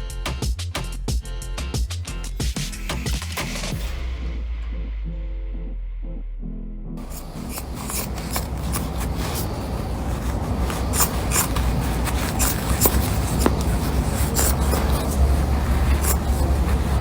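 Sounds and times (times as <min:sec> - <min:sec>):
rustling and scraping: 0:07.0 - 0:17.0.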